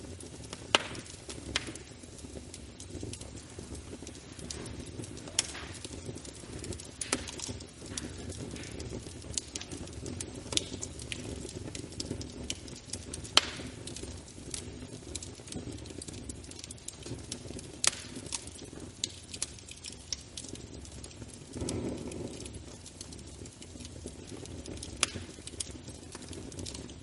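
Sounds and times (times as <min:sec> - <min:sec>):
fire crackling and popping: 0:00.0 - 0:27.0
wood fire burning: 0:00.0 - 0:27.0.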